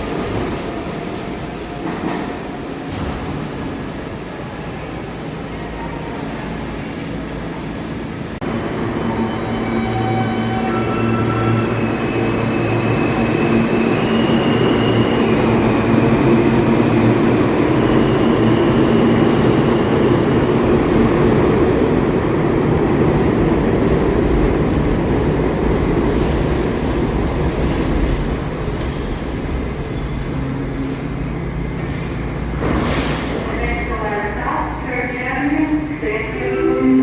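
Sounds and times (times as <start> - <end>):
subway train rumble: 0.0 - 37.0
wheel squeals: 28.5 - 32.6.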